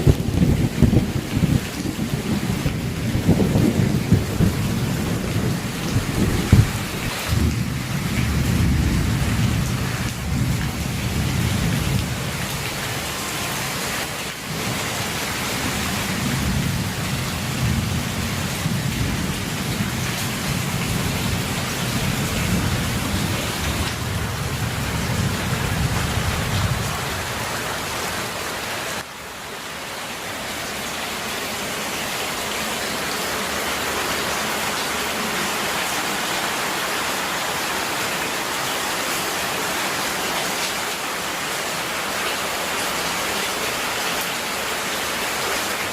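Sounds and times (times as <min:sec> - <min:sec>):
low rumble of thunder: 0:00.0 - 0:12.8, 0:15.6 - 0:27.5
heavy rain pouring: 0:00.0 - 0:45.9.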